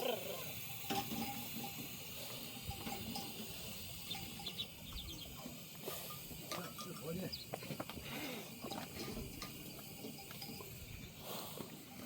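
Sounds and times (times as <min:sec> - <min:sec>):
steady high hiss: 0:00.0 - 0:12.0.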